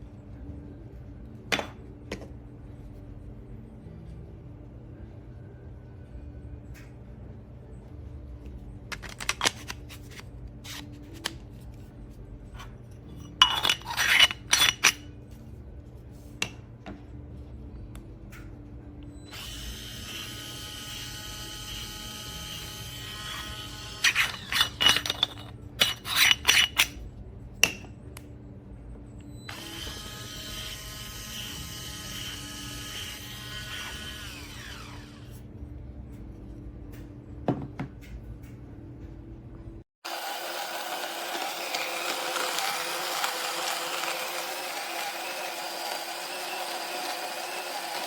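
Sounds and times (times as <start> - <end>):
coffee grinder motor whining: 19.3 - 25.4, 29.5 - 35.4, 40.0 - 48.0.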